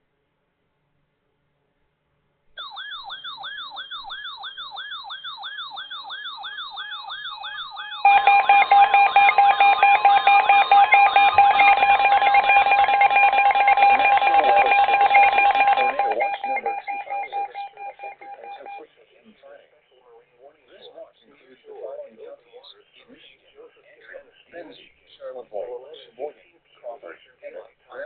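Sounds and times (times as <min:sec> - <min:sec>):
loud steady alert tone: 0:02.6 - 0:18.8
warbling siren tone: 0:02.6 - 0:18.8.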